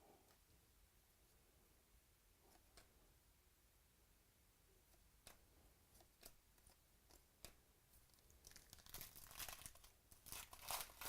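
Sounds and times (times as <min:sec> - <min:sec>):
wrapper crinkling: 0:08.2 - 0:11.0.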